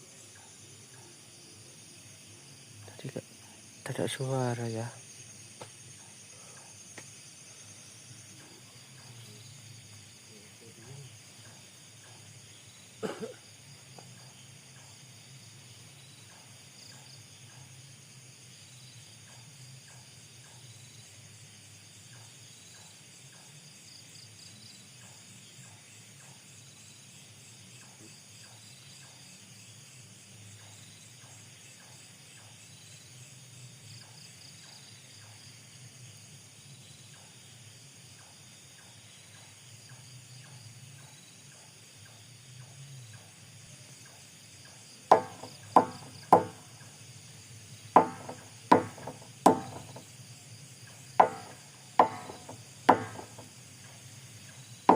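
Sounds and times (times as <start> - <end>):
night insects chirring: 0.0 - 54.9
loud sharp knocks: 45.1 - 46.7, 48.0 - 50.1, 51.2 - 53.5.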